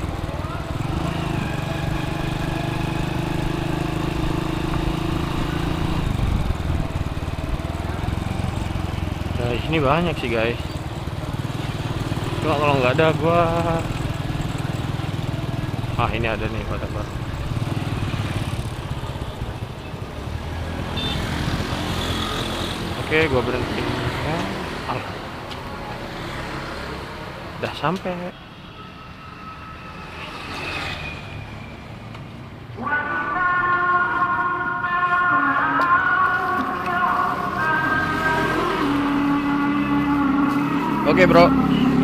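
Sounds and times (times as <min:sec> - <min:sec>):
motorcycle engine running: 0:00.0 - 0:20.4
road noise: 0:00.0 - 0:42.0.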